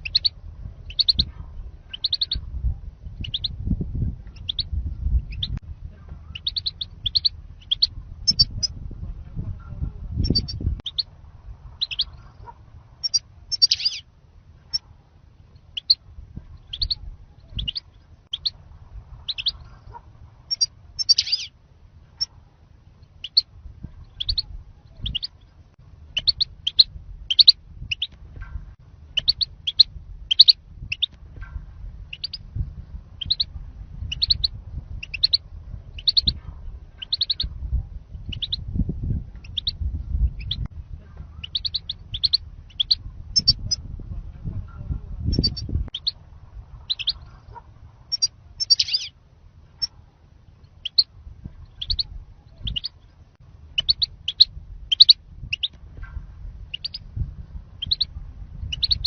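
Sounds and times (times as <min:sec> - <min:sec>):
goldfinch chirping: 0:00.0 - 0:00.3, 0:00.9 - 0:01.3, 0:01.9 - 0:02.4, 0:04.4 - 0:04.7, 0:06.3 - 0:08.7, 0:11.8 - 0:12.2, 0:13.0 - 0:14.0, 0:16.6 - 0:18.6, 0:19.3 - 0:19.6, 0:20.5 - 0:21.5, 0:23.2 - 0:23.4, 0:24.1 - 0:25.4, 0:26.2 - 0:28.2, 0:29.2 - 0:31.2, 0:32.1 - 0:32.4, 0:33.2 - 0:35.4, 0:36.0 - 0:36.4, 0:37.0 - 0:37.5, 0:38.3 - 0:38.6, 0:41.4 - 0:43.8, 0:46.9 - 0:47.3, 0:48.1 - 0:49.1, 0:50.8 - 0:51.1, 0:51.7 - 0:53.1, 0:53.8 - 0:55.8, 0:56.7 - 0:57.0, 0:57.8 - 0:59.0
faint low rumble: 0:00.0 - 0:59.0.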